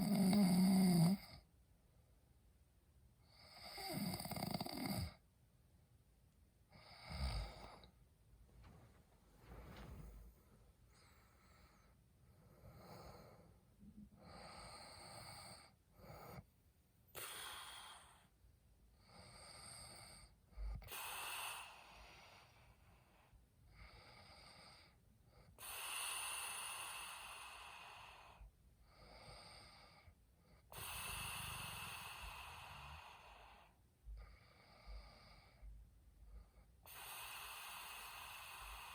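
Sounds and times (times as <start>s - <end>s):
man snoring heavily: 0.0s - 1.4s, 3.4s - 5.2s, 6.7s - 7.9s.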